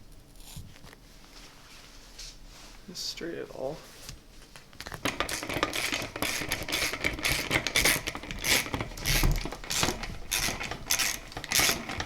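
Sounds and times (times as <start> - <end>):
bike parts scraping and rattling: 4.8 - 12.0.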